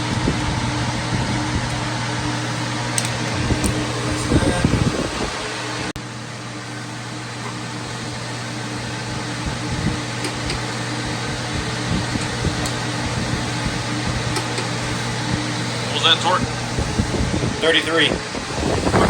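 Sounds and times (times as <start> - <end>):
fan motor humming: 0.0 - 19.0.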